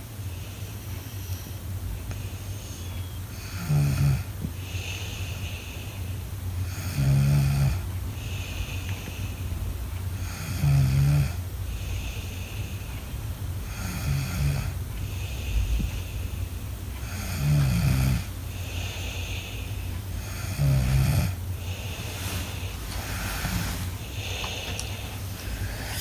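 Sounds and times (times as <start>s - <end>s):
soft hissing breaths: 0.0s - 26.0s
steady low hum: 0.0s - 26.0s
child snoring: 2.6s - 5.7s, 6.6s - 8.8s, 10.1s - 11.4s, 13.6s - 14.8s, 17.0s - 26.0s.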